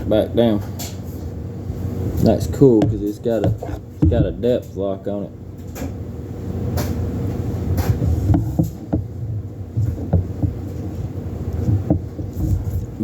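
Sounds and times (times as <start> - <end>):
nailer parts clicking and knocking: 2.2 - 4.5.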